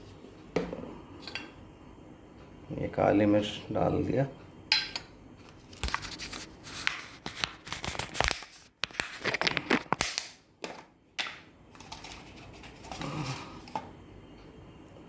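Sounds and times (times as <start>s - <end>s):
crinkling and rustling: 5.5s - 10.0s.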